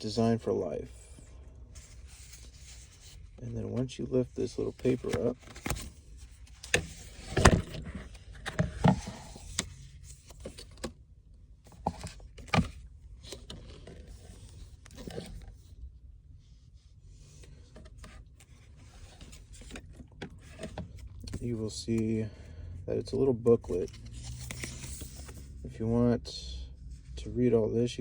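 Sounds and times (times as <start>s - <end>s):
paper and cardboard rustling: 1.8s - 10.9s, 11.7s - 15.6s, 17.3s - 21.7s, 23.6s - 25.6s.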